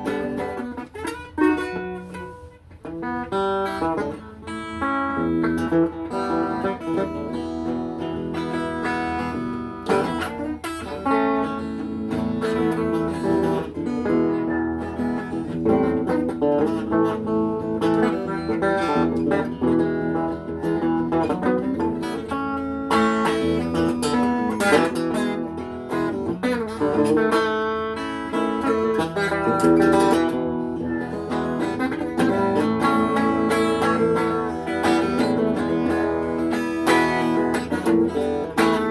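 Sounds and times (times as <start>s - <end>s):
guitar plucked and strummed: 0.0s - 38.9s.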